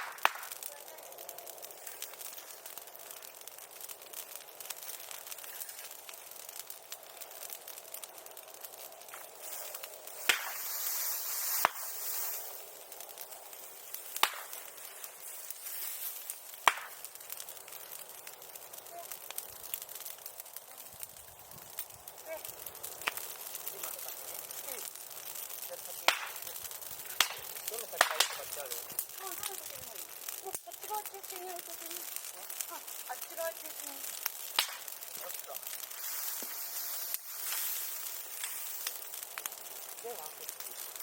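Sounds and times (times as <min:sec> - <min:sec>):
bamboo bursting bangs: 0:00.0 - 0:00.7, 0:08.6 - 0:12.0, 0:13.9 - 0:18.1, 0:25.0 - 0:30.4, 0:34.0 - 0:40.0
bonfire crackling: 0:00.0 - 0:41.0
hissing rush: 0:00.0 - 0:41.0.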